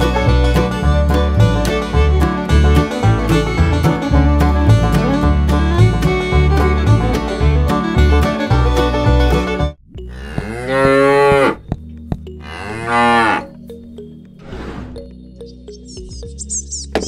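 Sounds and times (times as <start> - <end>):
banjo music: 0.0 - 11.5
cow mooing: 10.0 - 11.6, 12.4 - 13.6.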